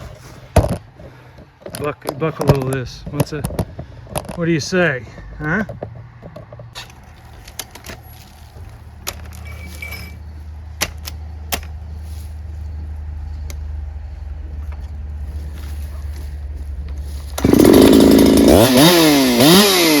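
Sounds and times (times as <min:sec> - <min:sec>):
handling clicks and knocks: 0:00.5 - 0:12.0, 0:12.7 - 0:17.5
chainsaw idling: 0:16.6 - 0:20.0.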